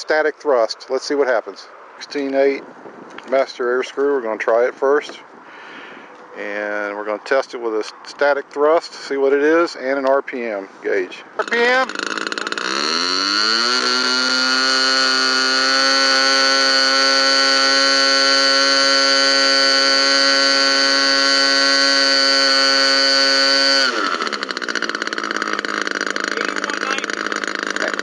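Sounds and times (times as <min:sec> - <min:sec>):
model aircraft engine running: 0:11.4 - 0:28.0.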